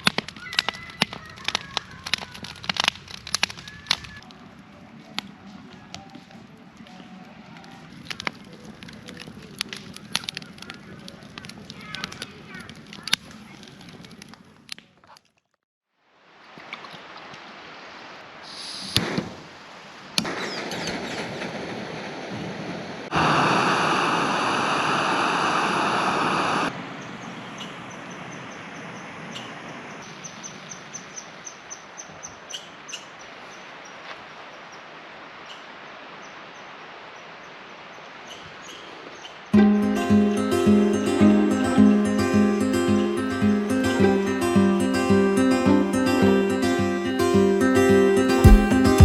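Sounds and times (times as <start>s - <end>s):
steady rushing noise: 21.6s - 27.0s.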